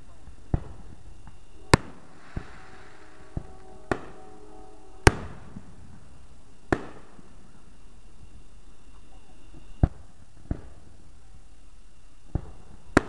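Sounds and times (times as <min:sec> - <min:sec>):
fireworks bangs: 0:00.3 - 0:07.8, 0:12.3 - 0:13.0.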